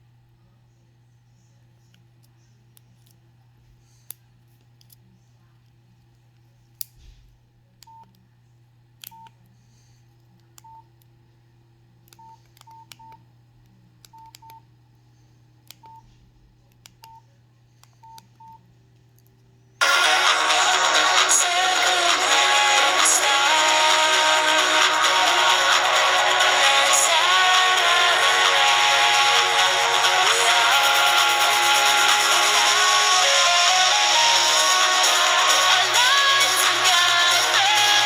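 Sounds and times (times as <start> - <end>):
faint low hum: 0.0 - 38.0
mobile phone keypad beeps: 12.2 - 13.2, 14.1 - 14.6, 18.0 - 18.6.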